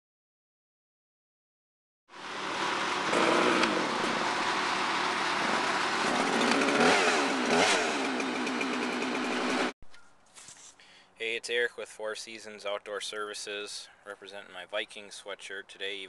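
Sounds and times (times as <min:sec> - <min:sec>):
chainsaw engine revving: 0:02.2 - 0:09.7.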